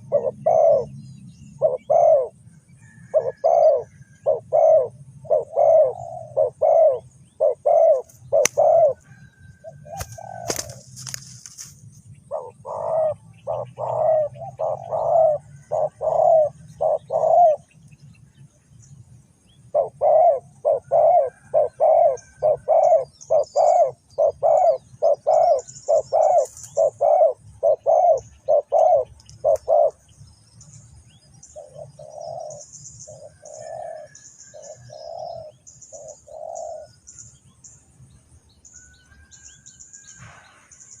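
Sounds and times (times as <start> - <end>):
dove cooing: 0.0 - 11.2, 12.3 - 17.7, 19.7 - 30.1, 31.4 - 37.1
small birds chirping: 0.0 - 41.0.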